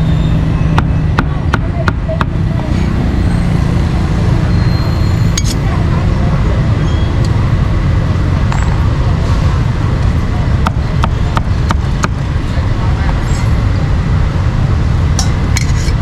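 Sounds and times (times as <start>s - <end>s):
traffic noise: 0.0s - 16.0s
background voices: 5.5s - 14.2s.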